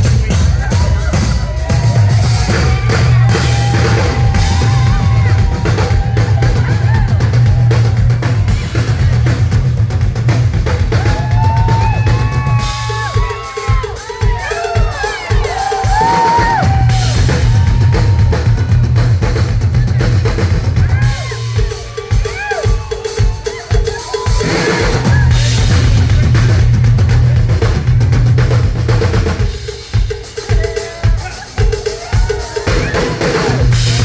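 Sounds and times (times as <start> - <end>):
heavy bass: 0.0 - 22.9, 23.6 - 30.6, 32.7 - 34.0
pounding drum kit: 0.0 - 34.0.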